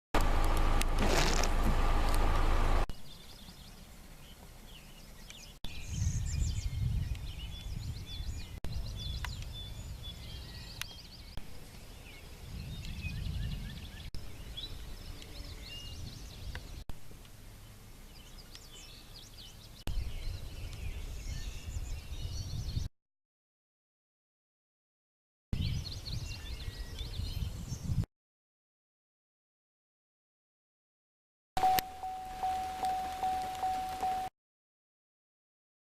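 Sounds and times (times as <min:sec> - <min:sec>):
songbirds chirping and singing: 0:02.9 - 0:22.9, 0:25.6 - 0:28.0
loud steady noise: 0:31.6 - 0:34.3.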